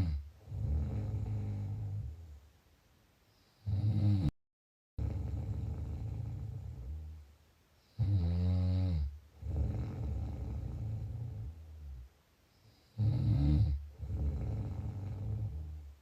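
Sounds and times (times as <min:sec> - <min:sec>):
person snoring: 0:00.0 - 0:02.2, 0:03.6 - 0:04.3, 0:05.0 - 0:07.2, 0:08.0 - 0:12.0, 0:12.8 - 0:15.8
soft breath: 0:03.2 - 0:03.8.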